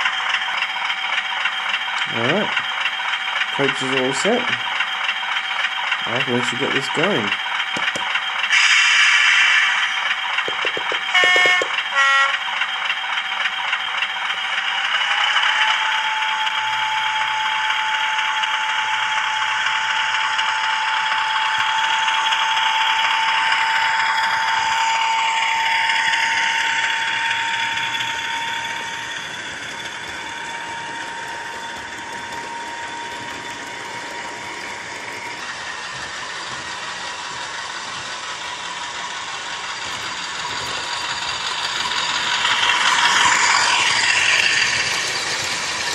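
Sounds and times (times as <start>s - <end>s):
model train diesel engine sound: 0.0s - 45.9s
model train rattling on track: 0.0s - 45.9s
steady whine: 14.3s - 45.9s.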